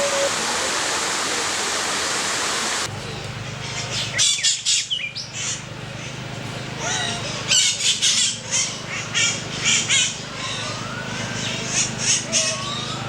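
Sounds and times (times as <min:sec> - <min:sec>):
waterfall rushing: 0:00.0 - 0:02.9.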